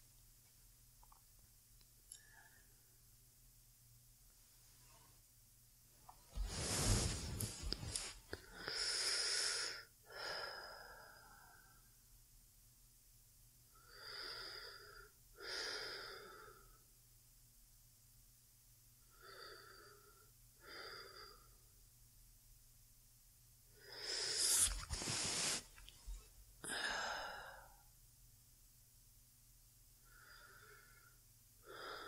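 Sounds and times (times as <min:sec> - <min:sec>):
woman breathing slowly: 0:02.1 - 0:02.9, 0:06.3 - 0:12.0, 0:13.8 - 0:16.9, 0:19.1 - 0:21.7, 0:23.8 - 0:27.9, 0:30.0 - 0:32.0.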